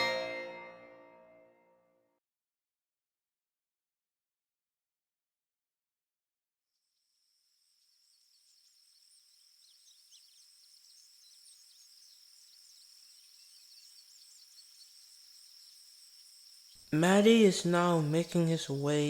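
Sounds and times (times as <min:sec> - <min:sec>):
high cricket trill: 0:08.7 - 0:19.0.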